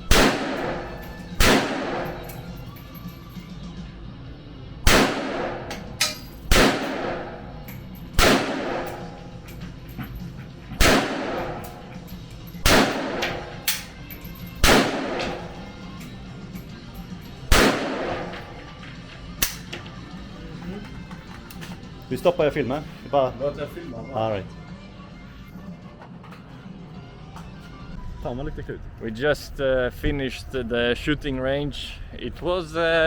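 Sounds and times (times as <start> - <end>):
echoing gunshots: 0.0 - 2.6, 4.8 - 9.5, 10.7 - 14.0, 14.6 - 15.8, 17.5 - 18.7.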